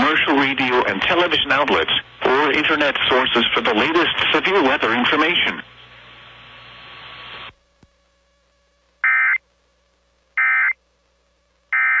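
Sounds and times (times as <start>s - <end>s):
radio hiss: 0.0s - 12.0s
electronic data bursts: 9.0s - 9.4s, 10.4s - 10.8s, 11.7s - 12.0s.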